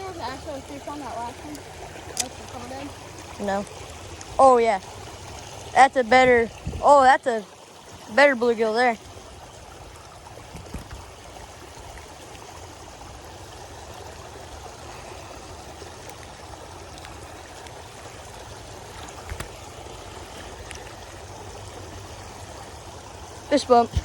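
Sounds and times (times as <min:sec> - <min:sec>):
creek water trickling: 0:00.0 - 0:24.0.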